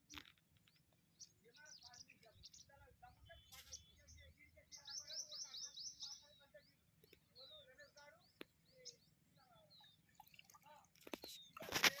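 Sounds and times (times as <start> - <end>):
faint bird chirps: 0.0 - 12.0.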